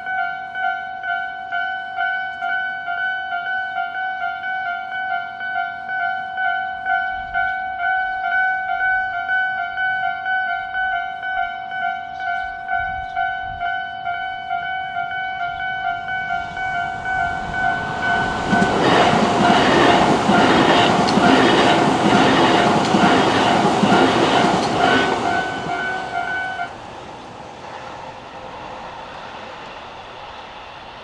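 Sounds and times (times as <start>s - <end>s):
level crossing warning bell: 0.0s - 26.7s
train rushing past: 15.9s - 31.0s
train wheels clacking on rail joints: 16.9s - 29.8s.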